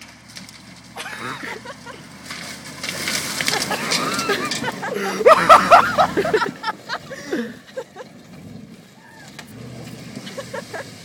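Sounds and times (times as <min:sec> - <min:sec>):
truck engine running: 0:00.0 - 0:11.0
onlookers whooping and hollering: 0:03.6 - 0:06.5, 0:09.0 - 0:09.4.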